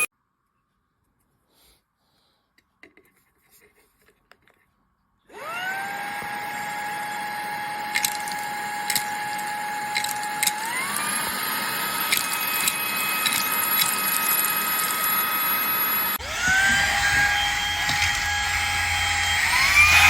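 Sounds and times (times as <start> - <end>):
handheld vacuum motor whine: 5.3 - 20.0.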